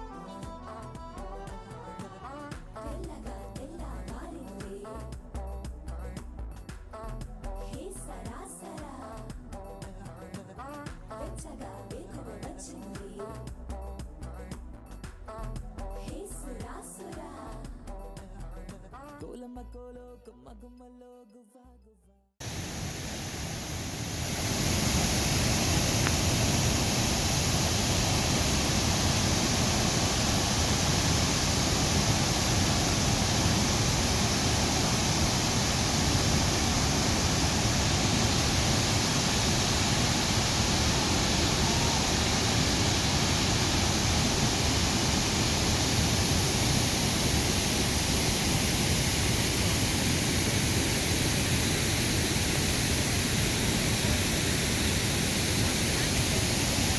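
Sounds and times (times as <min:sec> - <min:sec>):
waterfall roaring: 0:22.4 - 0:56.9.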